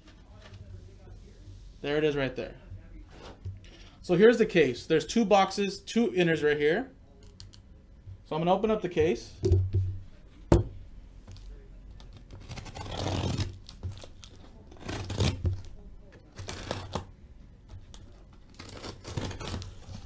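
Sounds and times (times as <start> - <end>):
cardboard and tape tearing: 12.1 - 15.7, 16.3 - 17.1, 18.4 - 20.0.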